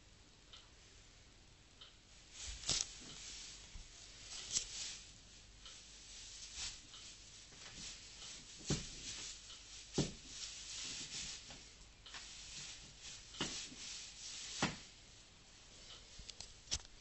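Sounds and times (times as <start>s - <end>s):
scratchy rustling: 2.2s - 15.0s.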